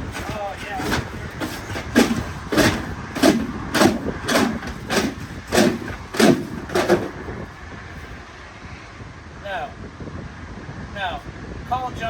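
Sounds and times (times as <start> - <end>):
shutter scraping and rattling: 0.0 - 7.4.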